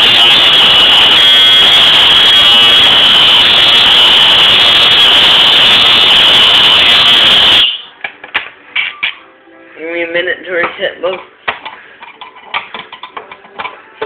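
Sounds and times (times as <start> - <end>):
fire alarm horn buzzing: 0.0 - 8.0.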